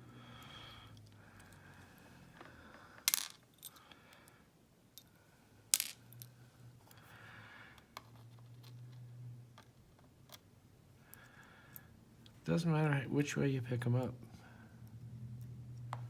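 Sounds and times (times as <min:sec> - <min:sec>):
metal pins clinking on hard surface: 0:05.8 - 0:06.3.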